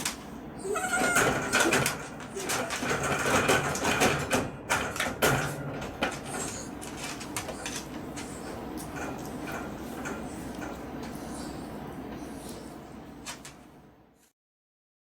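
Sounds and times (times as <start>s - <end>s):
wire cage rattling: 0.7s - 10.8s.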